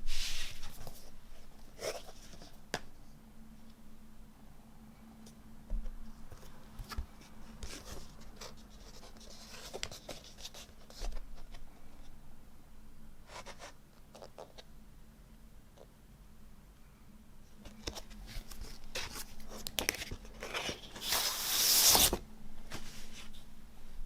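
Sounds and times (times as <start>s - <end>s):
cardboard and paper rustling: 17.7s - 23.4s.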